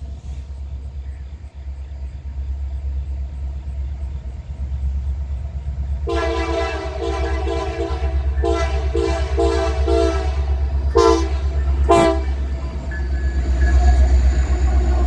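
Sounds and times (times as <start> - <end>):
locomotive low rumble: 0.0 - 15.0
locomotive air horn chord: 6.0 - 14.0.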